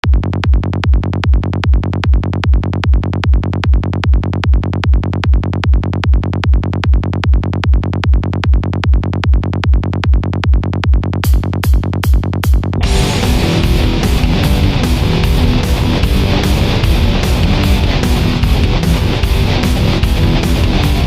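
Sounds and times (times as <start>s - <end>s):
loud kick drum: 0.0s - 21.0s
electronic dance music: 12.8s - 21.0s
held bass: 12.8s - 21.0s.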